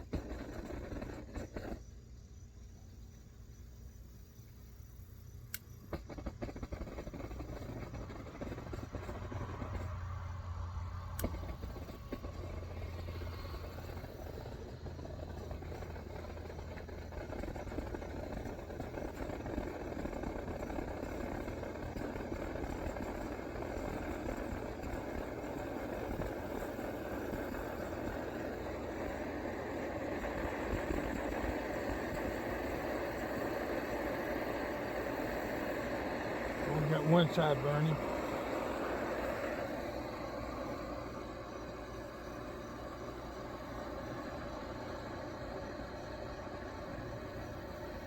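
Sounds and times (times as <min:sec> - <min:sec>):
stove burner rushing burn: 0:00.0 - 0:48.0
sharp clicks: 0:11.1 - 0:12.4.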